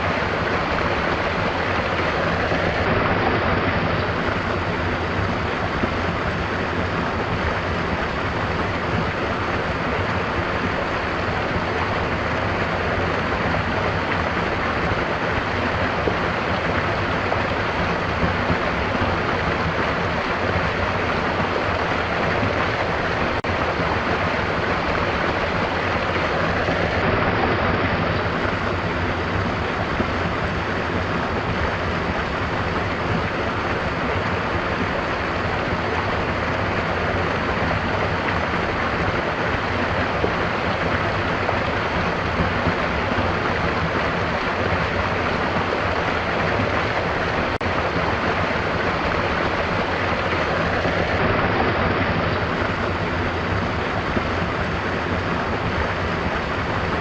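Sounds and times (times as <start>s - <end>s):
stream water flowing: 0.0s - 57.0s.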